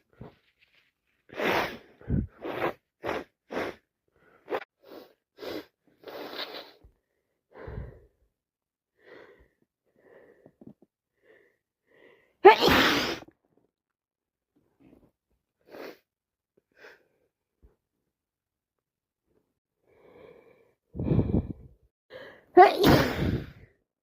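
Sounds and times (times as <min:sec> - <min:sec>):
person sniffing: 0:01.3 - 0:06.8
person sneezing: 0:12.4 - 0:13.3, 0:22.6 - 0:23.6.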